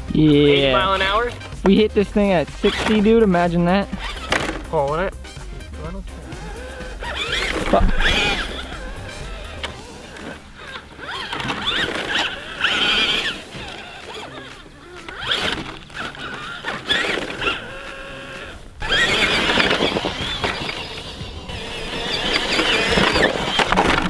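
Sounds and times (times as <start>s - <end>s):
electric motor whining: 0.0s - 24.0s.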